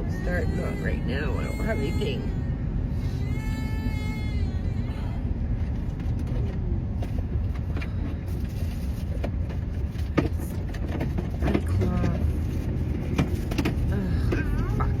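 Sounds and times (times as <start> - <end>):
car engine rumble inside cabin: 0.0 - 15.0.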